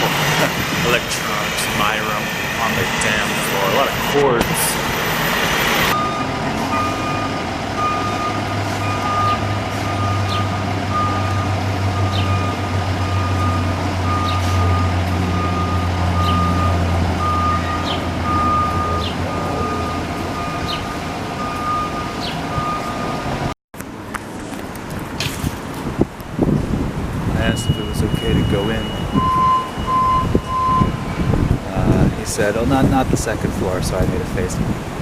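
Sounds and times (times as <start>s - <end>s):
truck reversing alarm beeping: 0.0s - 23.6s, 27.3s - 31.6s
diesel engine drone: 0.0s - 25.2s, 26.0s - 35.0s.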